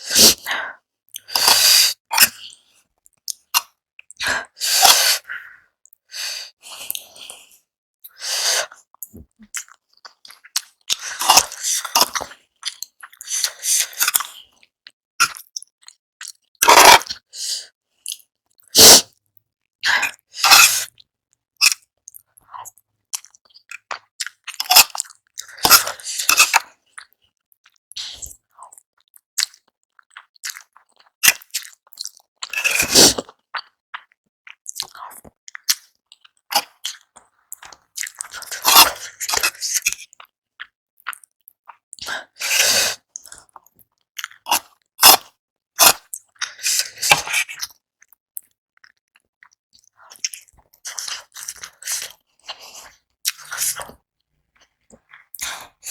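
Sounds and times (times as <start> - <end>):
person chewing: 0.0 - 7.5, 8.1 - 19.2, 19.8 - 21.0, 21.6 - 54.0, 54.6 - 55.9.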